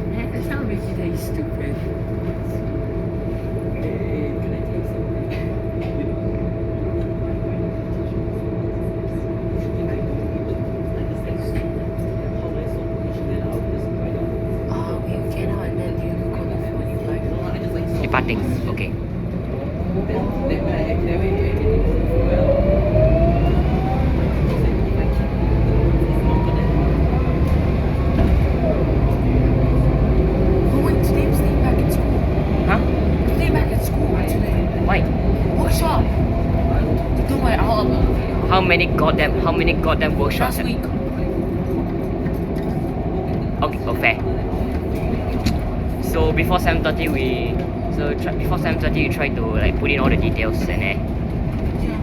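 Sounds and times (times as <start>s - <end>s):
bus diesel engine drone: 0.0s - 52.0s.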